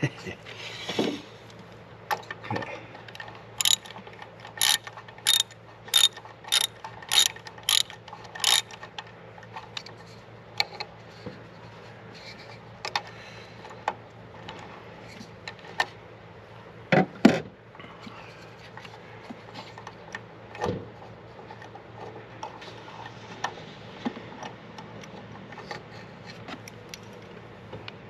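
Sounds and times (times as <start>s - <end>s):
ratchet wrench clicking: 3.6s - 3.9s, 4.6s - 8.8s
tool clicks: 3.6s - 3.9s, 4.5s - 8.8s.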